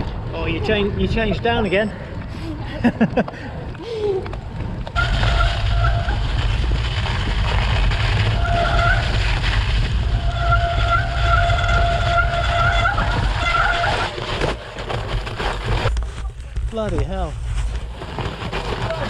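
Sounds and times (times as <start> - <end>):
bicycle tyre rumble: 0.0 - 19.0
bike brakes squealing: 5.0 - 6.6, 8.0 - 14.4.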